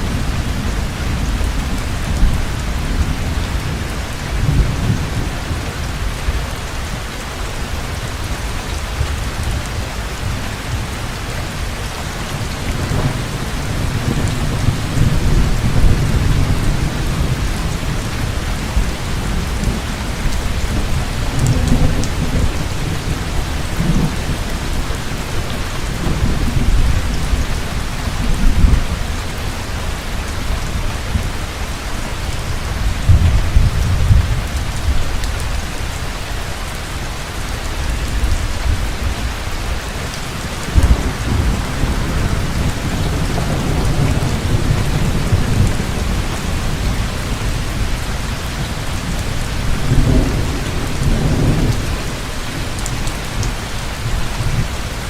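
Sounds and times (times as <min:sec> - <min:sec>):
heavy rain falling: 0:00.0 - 0:55.0
rolling thunder: 0:12.2 - 0:29.2, 0:32.8 - 0:35.6, 0:40.6 - 0:54.8.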